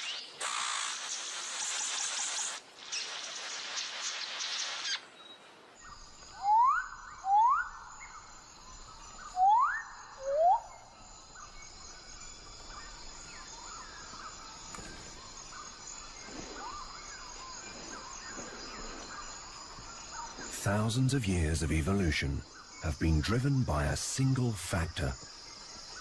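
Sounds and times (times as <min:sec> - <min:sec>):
rain-like hiss: 0:00.0 - 0:06.5, 0:07.9 - 0:26.0
high insect chorus: 0:00.0 - 0:26.0
bird upward-sweeping whistles: 0:09.4 - 0:10.7.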